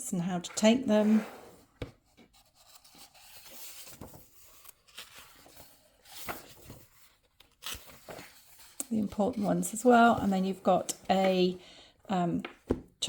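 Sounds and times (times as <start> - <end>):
paper pages rustling: 2.0 - 11.5.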